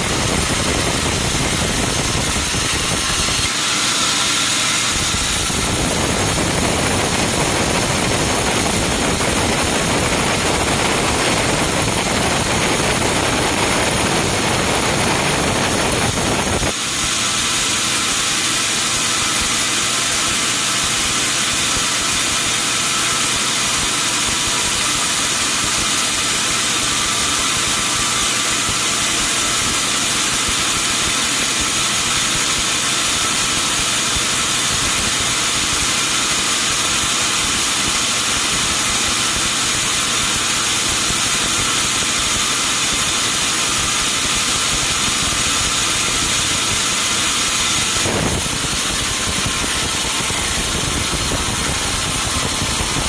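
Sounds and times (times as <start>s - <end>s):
sawmill machinery rumbling: 0.0s - 30.1s, 40.8s - 53.0s.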